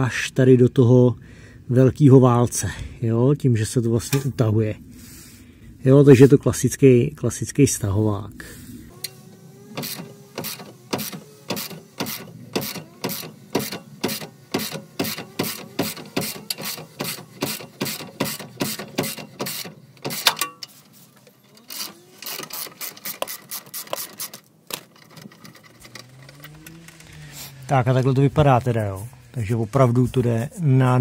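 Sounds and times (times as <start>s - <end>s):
ratchet wrench clicking: 9.8s - 20.8s.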